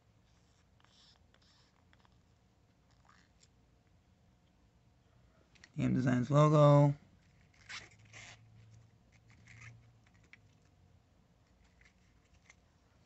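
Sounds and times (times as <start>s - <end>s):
faint clicks and scratches: 0.2s - 3.6s, 7.2s - 10.8s, 11.4s - 12.7s.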